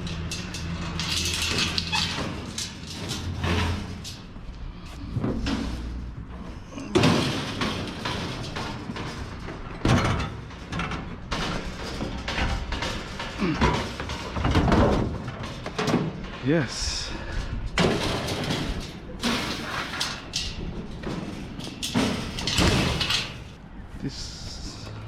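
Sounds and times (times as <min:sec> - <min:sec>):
sheet metal knocks and bangs: 0:06.9 - 0:16.4, 0:17.7 - 0:23.6.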